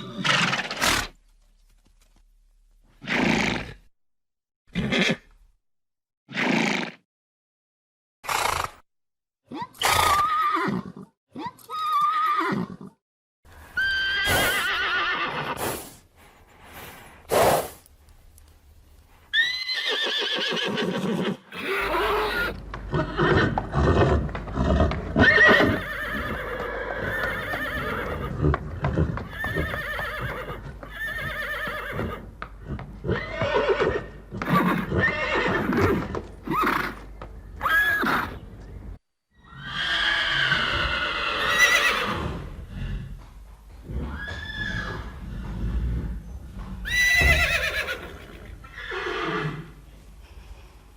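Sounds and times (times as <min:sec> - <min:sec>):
horses neighing: 0:13.8 - 0:15.7, 0:19.3 - 0:38.4, 0:39.4 - 0:43.2, 0:43.8 - 0:49.8.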